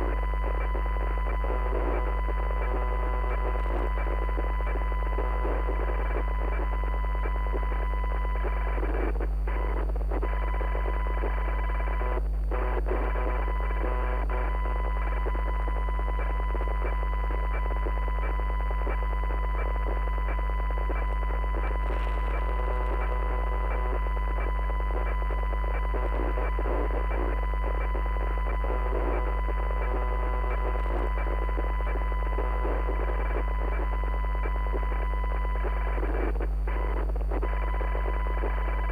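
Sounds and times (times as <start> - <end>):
crackling static: 0.0 - 38.9.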